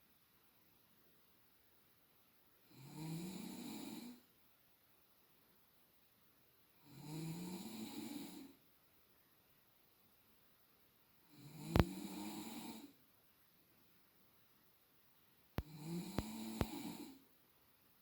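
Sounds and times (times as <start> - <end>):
quiet breathing: 1.8 - 4.4, 6.7 - 9.6, 11.1 - 14.8, 15.6 - 17.5
woman snoring: 2.6 - 4.3, 6.8 - 8.6, 11.3 - 13.0, 15.6 - 17.2.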